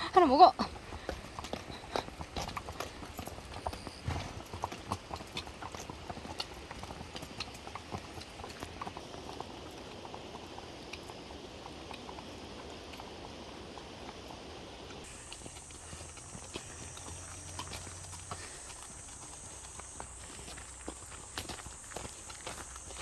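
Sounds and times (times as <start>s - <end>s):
horse hooves clip-clopping: 0.0s - 23.0s
steady background hiss: 8.0s - 23.0s.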